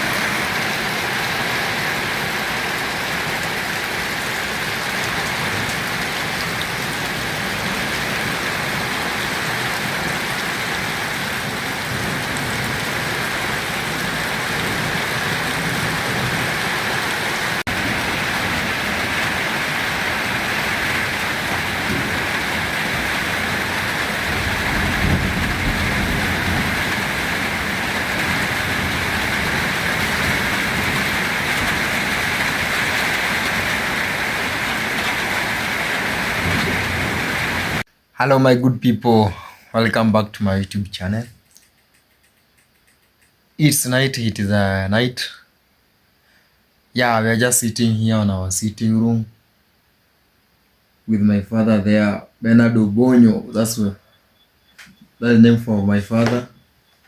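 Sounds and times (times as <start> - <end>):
heavy rain falling: 0.0 - 37.9.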